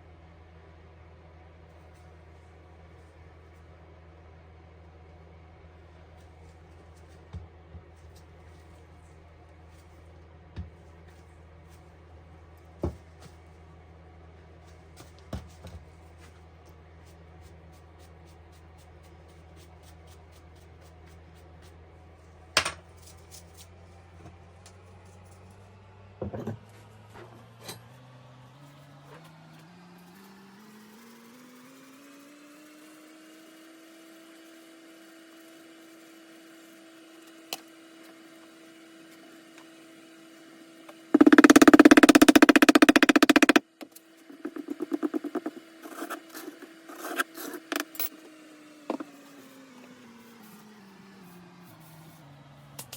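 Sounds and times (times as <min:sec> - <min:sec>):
faint regular ticking: 0:41.2 - 0:43.6
loud pulsing rattle: 0:41.2 - 0:43.6
sharp knock: 0:41.2 - 0:43.6, 0:44.4 - 0:46.2, 0:47.7 - 0:48.0
small motor humming: 0:41.2 - 0:43.6, 0:44.2 - 0:51.4.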